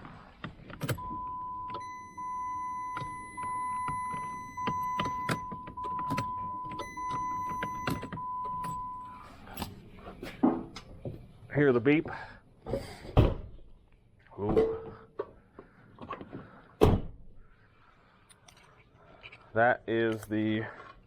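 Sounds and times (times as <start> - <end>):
circuit tester beeping: 1.0 - 9.2.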